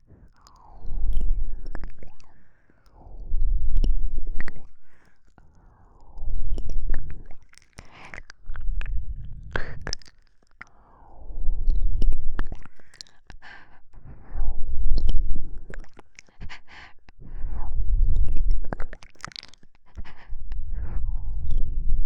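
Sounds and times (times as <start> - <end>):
wet mouth clicks and smacks: 0.3 - 3.0, 3.7 - 10.8, 11.7 - 13.8, 15.0 - 17.1, 18.1 - 20.6
breath blowing on microphone: 19.9 - 22.0.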